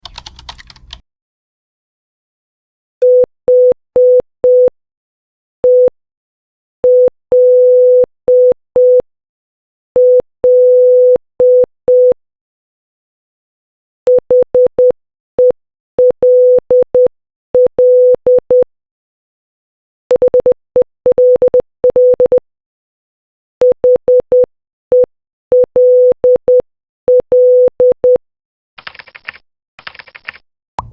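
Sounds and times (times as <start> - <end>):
morse code beep tone: 20.1 - 22.4.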